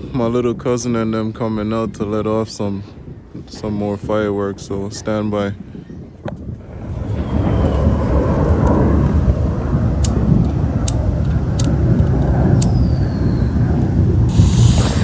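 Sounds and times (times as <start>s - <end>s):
low rumble: 6.4s - 15.0s
falling whistle: 7.1s - 8.4s
fireworks cracking: 14.3s - 15.0s
loud hiss: 14.3s - 15.0s.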